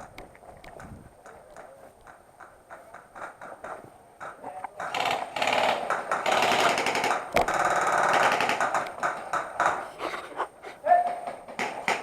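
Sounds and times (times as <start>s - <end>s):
sharp crack: 0.0s - 9.9s
airsoft gun firing bursts: 4.8s - 9.8s.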